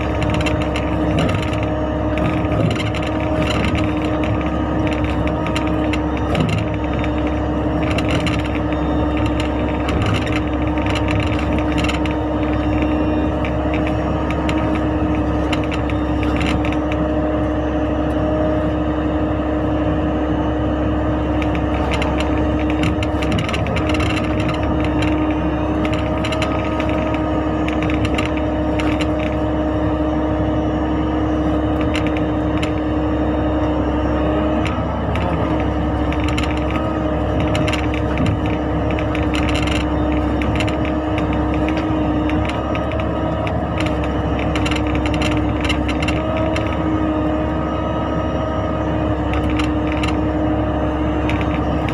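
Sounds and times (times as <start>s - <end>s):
machine parts clicking and knocking: 0.0s - 17.0s, 21.4s - 29.4s, 34.5s - 47.0s, 49.2s - 50.3s, 51.1s - 51.9s
diesel engine humming: 0.0s - 51.9s.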